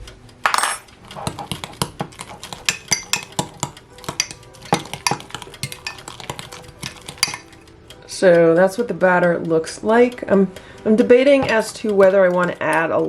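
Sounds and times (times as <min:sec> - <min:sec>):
spoon clinking against bowl: 0:00.5 - 0:07.6.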